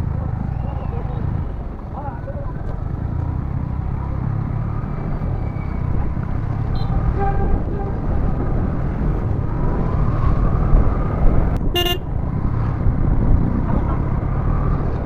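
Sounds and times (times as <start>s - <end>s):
motorcycle engine rumble: 0.0s - 15.0s
wind: 0.0s - 15.0s
vehicle horn toots: 11.7s - 12.1s.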